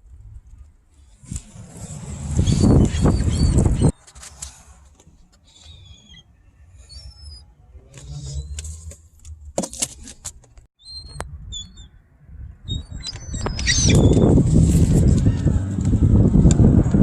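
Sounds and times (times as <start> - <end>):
high bird chirps: 2.4 - 4.0, 10.8 - 14.4.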